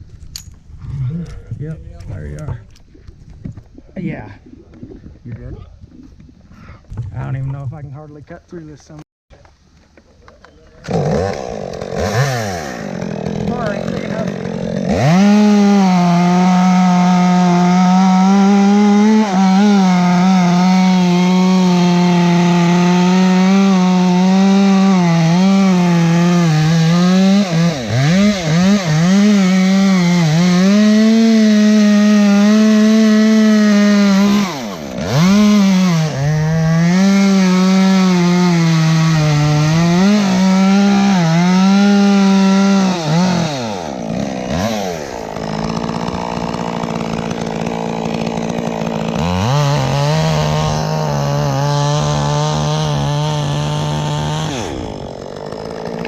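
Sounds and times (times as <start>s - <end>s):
chainsaw cutting wood: 10.8s - 56.0s.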